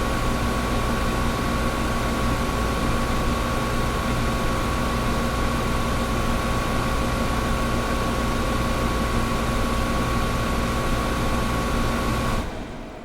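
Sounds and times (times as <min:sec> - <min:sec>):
air conditioner running: 0:00.0 - 0:13.0.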